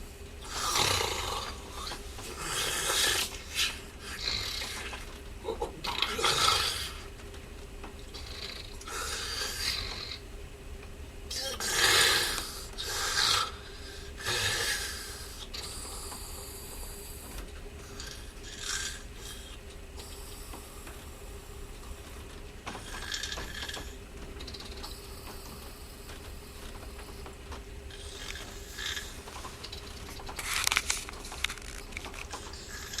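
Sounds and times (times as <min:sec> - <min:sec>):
faint steady hum: 0:00.0 - 0:33.0
person snoring loudly: 0:00.4 - 0:07.0, 0:08.2 - 0:10.2, 0:11.3 - 0:15.9.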